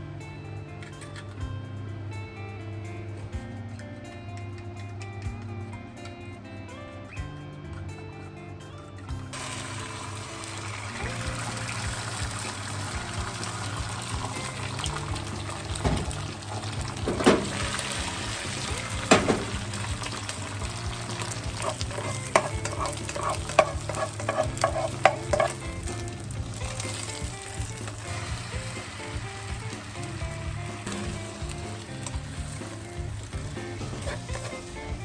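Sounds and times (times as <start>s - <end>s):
food sizzling in a pan: 9.4s - 35.0s
utensil knocking against pan: 15.7s - 17.8s, 18.9s - 20.0s, 20.6s - 25.9s.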